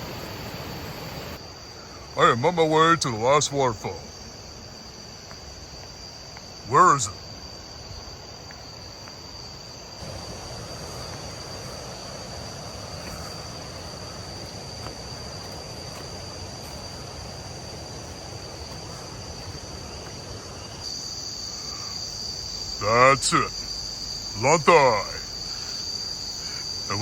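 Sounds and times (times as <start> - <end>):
insects calling drone: 0.0 - 27.0
even rushing noise: 10.0 - 20.8.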